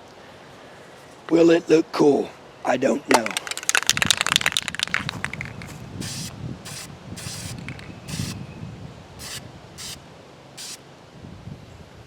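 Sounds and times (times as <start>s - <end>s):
spray-paint can hissing: 5.3s - 8.4s, 9.2s - 10.0s, 10.6s - 10.8s.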